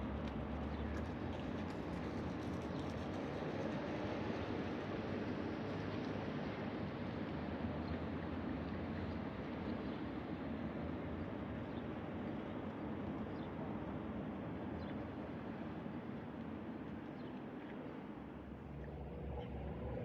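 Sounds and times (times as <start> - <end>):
low rumble: 18.6 - 20.0.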